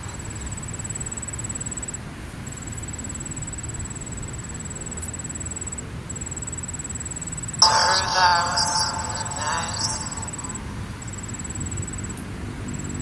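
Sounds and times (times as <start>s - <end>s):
distant highway traffic: 0.0s - 13.0s
high pulsing tone: 7.6s - 11.5s.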